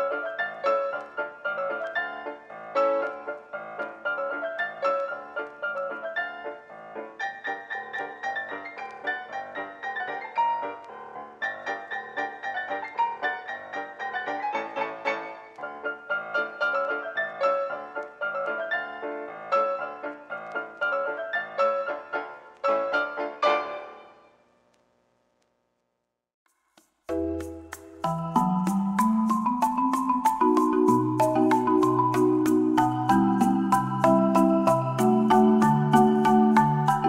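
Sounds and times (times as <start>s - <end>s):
piano music: 0.0s - 24.4s, 27.1s - 37.0s
marimba-like mallet instrument: 27.1s - 37.0s.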